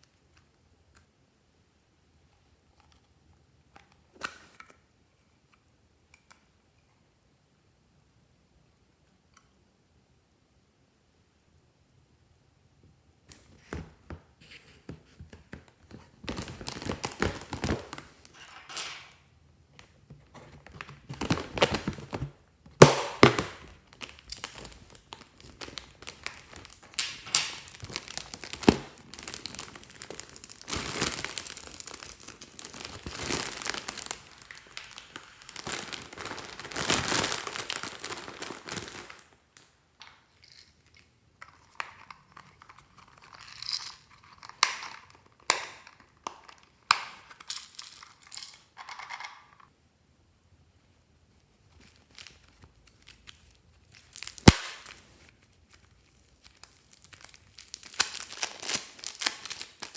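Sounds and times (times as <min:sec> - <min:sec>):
slime squelching and crackling: 0:22.8 - 0:39.3, 0:55.6 - 0:59.9.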